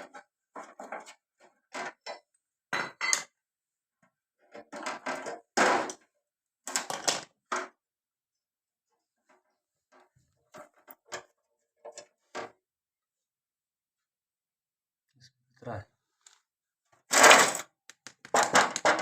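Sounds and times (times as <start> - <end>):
metal objects clattering: 17.1 - 17.7.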